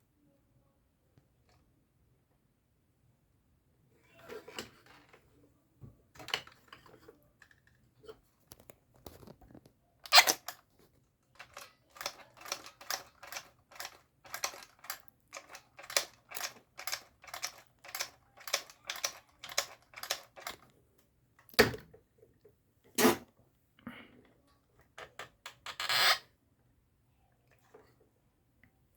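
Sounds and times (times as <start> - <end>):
plastic action figure clicking: 11.4 - 20.6.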